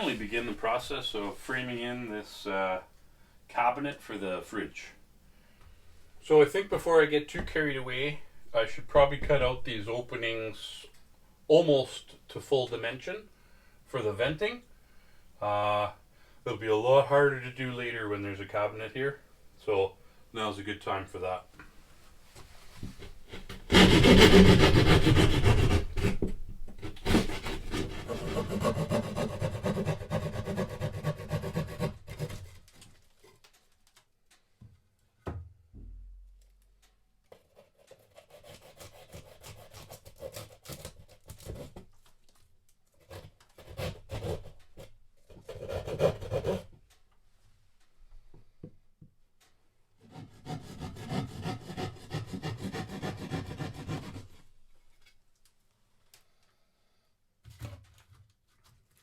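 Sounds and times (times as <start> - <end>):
hand saw cutting drywall: 23.0 - 32.7, 37.4 - 41.8, 43.0 - 46.7, 50.0 - 54.4.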